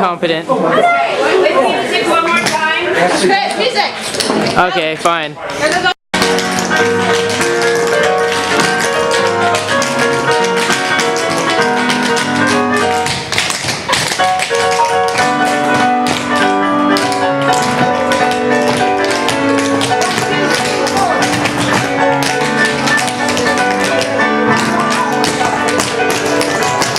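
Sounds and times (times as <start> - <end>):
tap shoes striking floor: 5.6 - 26.9
recorded show music: 6.2 - 26.9.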